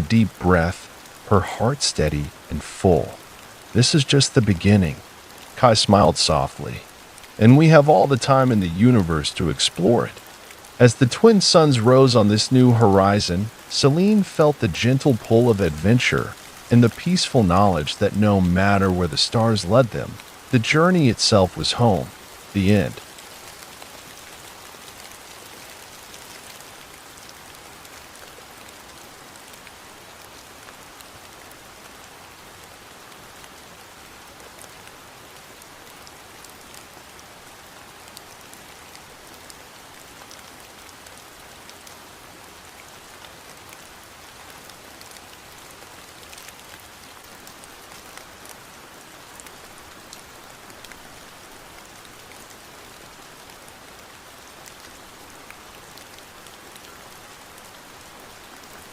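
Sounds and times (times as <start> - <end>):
steady rain falling: 0.0 - 58.9.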